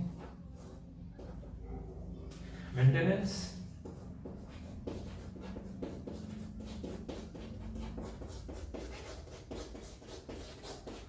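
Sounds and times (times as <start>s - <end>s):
pen writing strokes: 3.8s - 11.0s.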